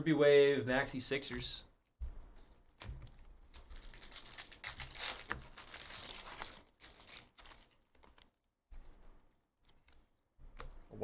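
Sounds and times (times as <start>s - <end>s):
wrapper crinkling and tearing: 3.5s - 8.4s.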